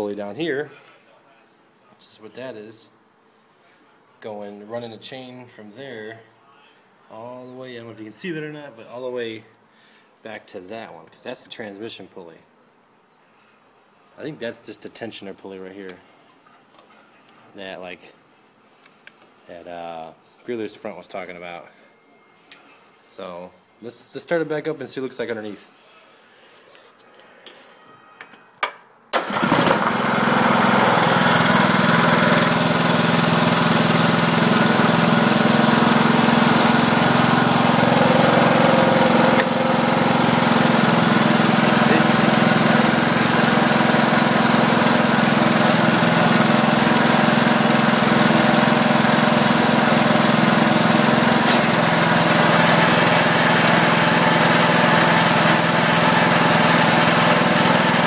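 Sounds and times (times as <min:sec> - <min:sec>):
lawn mower engine starting and running: 0:29.1 - 0:58.0.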